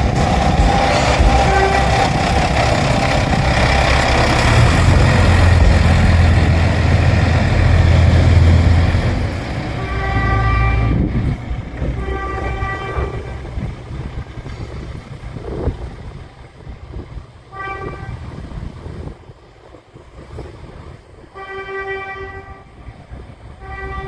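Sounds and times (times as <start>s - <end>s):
diesel railcar passing: 0.0s - 24.0s.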